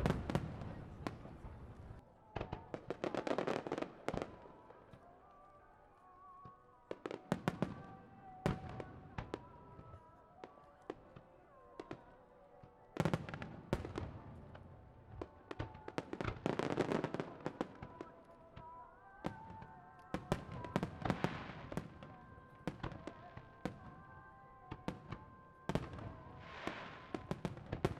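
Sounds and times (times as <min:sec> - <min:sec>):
fireworks bursting: 0:00.0 - 0:04.9, 0:13.0 - 0:24.0, 0:24.6 - 0:27.9.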